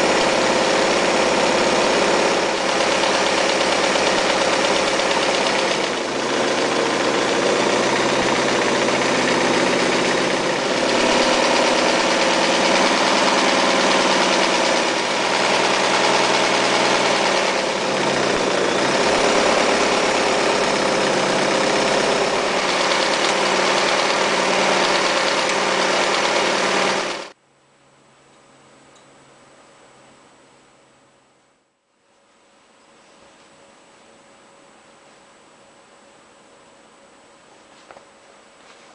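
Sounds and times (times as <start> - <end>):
sewing machine stitching: 0.0 - 27.4.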